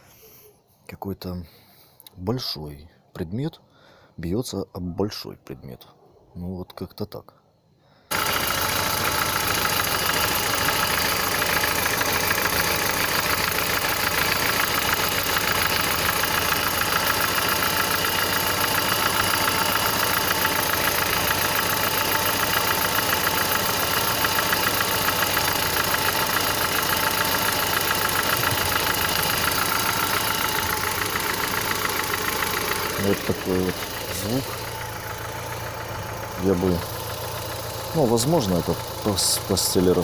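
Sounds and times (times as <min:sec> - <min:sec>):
car engine idling and misfiring: 0:08.1 - 0:40.0.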